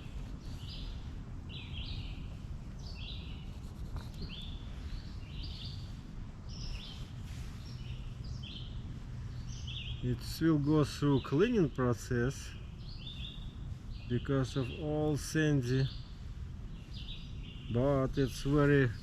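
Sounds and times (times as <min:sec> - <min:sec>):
bird chirping: 0:00.0 - 0:19.0
steady low rumble: 0:00.0 - 0:19.0.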